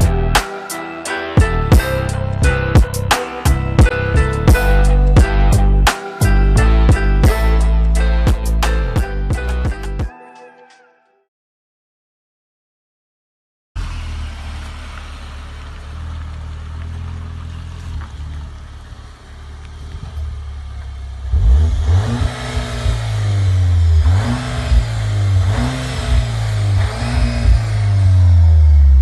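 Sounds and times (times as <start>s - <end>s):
car engine accelerating: 13.8s - 29.0s.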